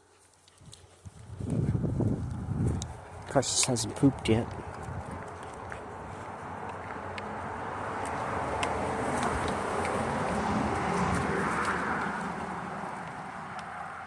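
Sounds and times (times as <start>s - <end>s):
car passing by: 5.8s - 14.0s.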